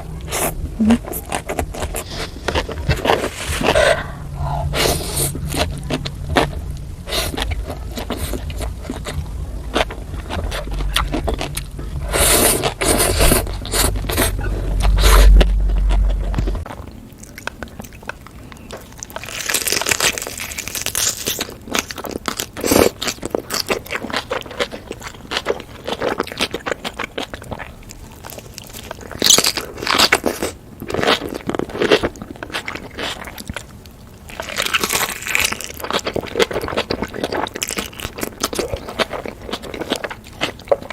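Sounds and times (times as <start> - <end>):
crunching and chewing food: 0.0 - 40.9
low steady hum: 0.0 - 40.9.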